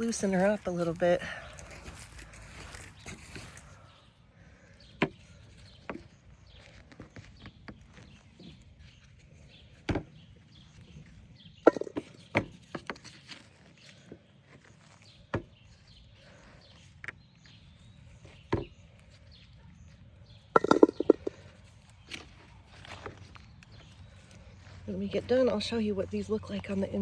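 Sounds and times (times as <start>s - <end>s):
digging thuds and scrapes: 0.0s - 3.9s, 4.8s - 25.8s
knocks: 11.7s - 12.6s.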